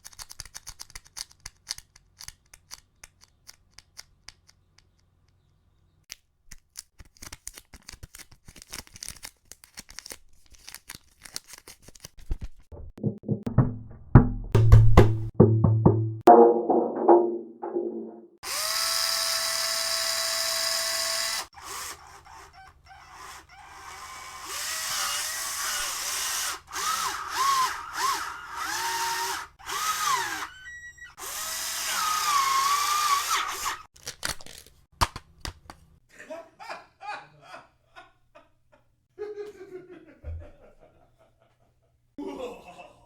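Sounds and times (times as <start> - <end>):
gliding pitch sound effects: 15.3 - 18.4.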